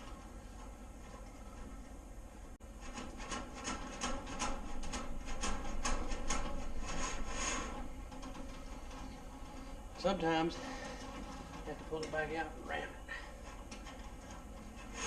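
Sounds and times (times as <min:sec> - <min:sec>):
fish tape scraping through metal conduit: 0:02.7 - 0:12.5.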